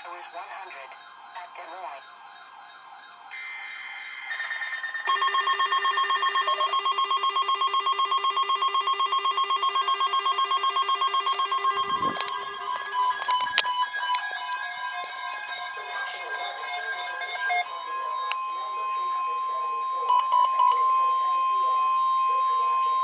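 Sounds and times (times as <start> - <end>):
pulsing multi-tone alert: 0.2 - 23.0
steady alert tone: 4.3 - 21.7.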